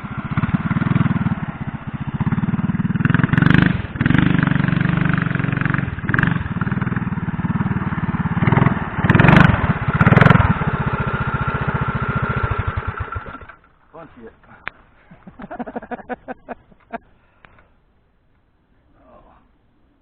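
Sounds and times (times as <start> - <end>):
small engine revving: 0.0 - 13.7.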